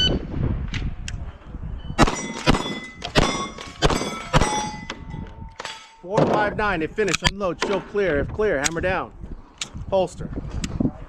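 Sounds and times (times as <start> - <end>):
pistol shots: 2.0 - 4.7
clang of struck steel target: 2.0 - 6.5.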